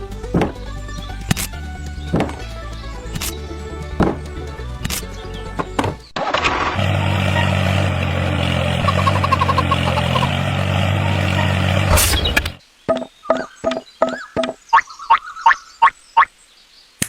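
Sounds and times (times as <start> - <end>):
engine idling: 0.0 - 12.6.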